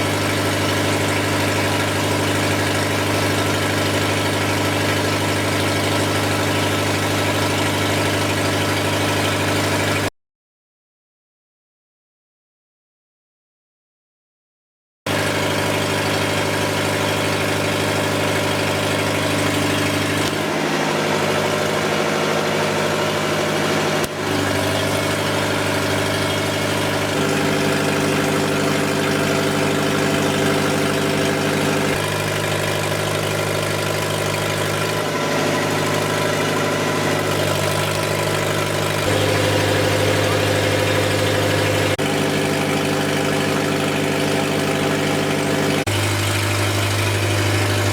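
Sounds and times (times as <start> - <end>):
diesel generator engine running: 0.0 - 10.1, 15.1 - 47.9.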